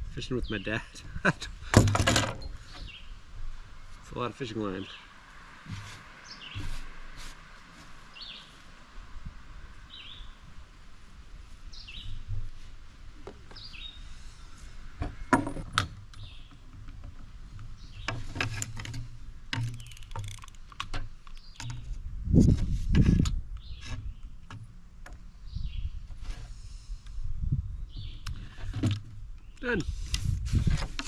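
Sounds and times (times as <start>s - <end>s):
small songbird chirping: 2.4s - 4.0s, 6.2s - 6.9s, 8.0s - 8.7s, 9.8s - 10.5s, 11.6s - 12.4s, 13.5s - 14.7s, 16.2s - 16.6s, 17.7s - 18.3s, 19.6s - 20.3s, 21.3s - 21.9s, 23.5s - 24.4s, 25.3s - 26.1s, 27.7s - 28.5s
sharp clicks and knocks: 15.0s - 22.0s.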